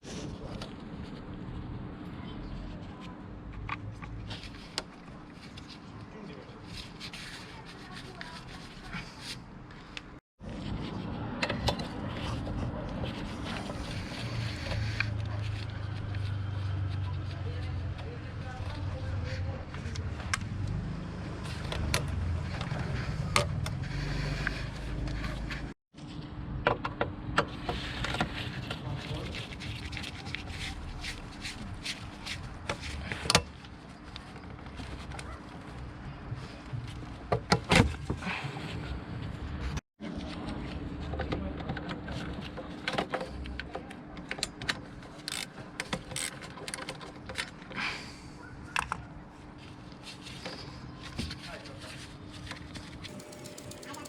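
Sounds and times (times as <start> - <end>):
metallic clinks of hand tools: 53.1 - 54.0.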